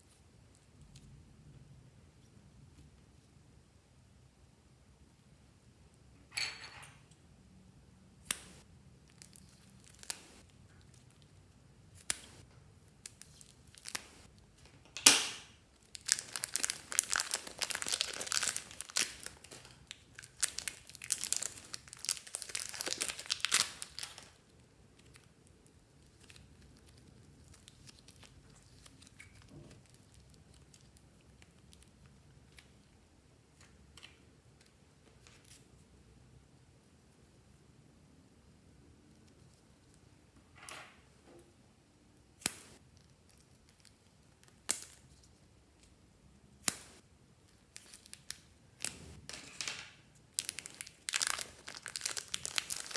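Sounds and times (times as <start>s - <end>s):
slime popping and crackling: 8.3s - 10.5s, 13.0s - 14.3s, 15.0s - 24.4s, 50.3s - 52.9s.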